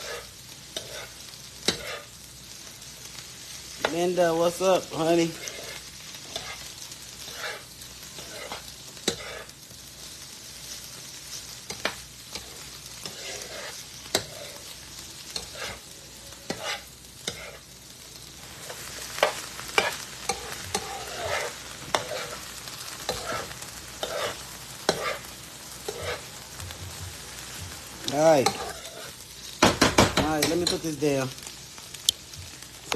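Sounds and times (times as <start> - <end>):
utensil scraping and clicking on pan: 0.0 - 2.2, 5.3 - 9.5, 11.7 - 14.7, 15.3 - 17.6, 18.6 - 22.4, 23.0 - 26.3, 28.0 - 30.8
vegetables sizzling in a pan: 0.0 - 32.9.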